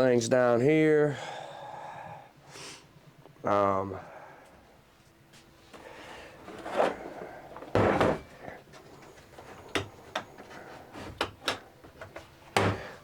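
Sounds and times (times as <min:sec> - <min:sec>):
toolbox drawers sliding: 0:06.4 - 0:08.3.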